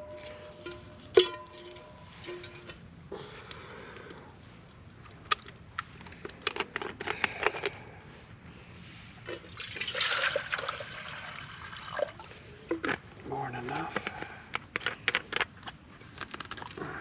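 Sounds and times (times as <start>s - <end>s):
water pouring and splashing: 9.4s - 12.3s.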